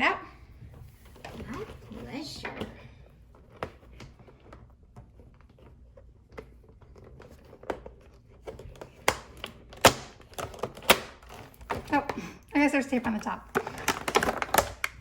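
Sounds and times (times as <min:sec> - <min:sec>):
plastic packaging crinkling: 0:13.1 - 0:15.0.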